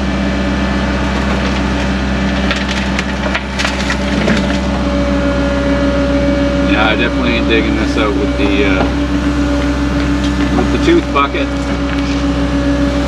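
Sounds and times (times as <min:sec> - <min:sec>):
excavator running under load: 0:00.0 - 0:13.0
bucket cracking through soil and rock: 0:01.0 - 0:04.8.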